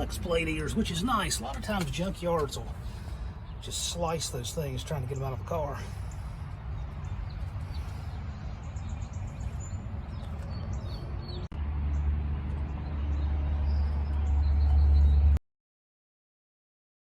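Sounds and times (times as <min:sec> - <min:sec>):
bird chirps: 0:05.1 - 0:11.5.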